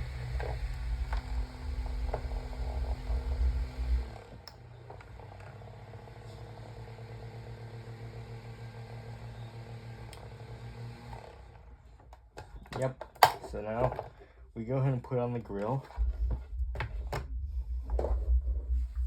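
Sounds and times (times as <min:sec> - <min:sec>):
desk fan running: 0:00.0 - 0:12.2.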